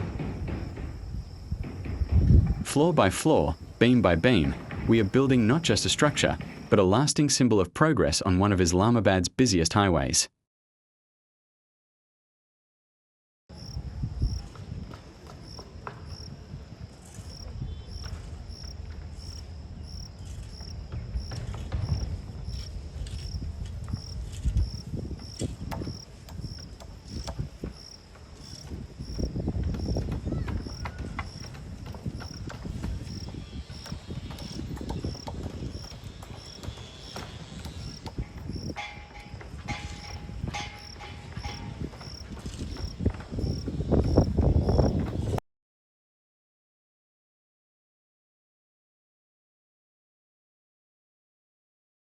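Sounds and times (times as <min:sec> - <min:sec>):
cricket chirping: 0:00.0 - 0:02.6, 0:13.5 - 0:45.1
faint knocks: 0:00.0 - 0:02.7, 0:23.8 - 0:45.3.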